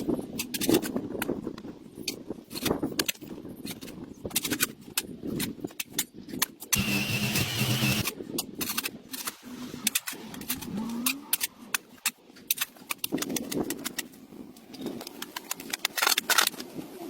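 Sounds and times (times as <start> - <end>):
small motor whine: 6.8 - 8.1.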